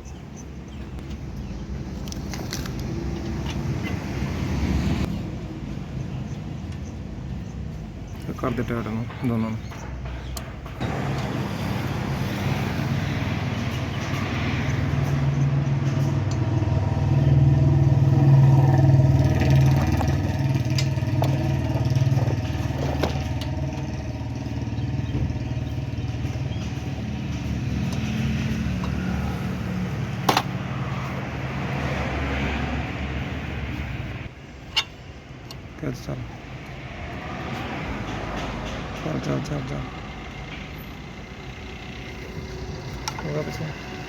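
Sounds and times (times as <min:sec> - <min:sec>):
car engine running: 0:09.7 - 0:31.6.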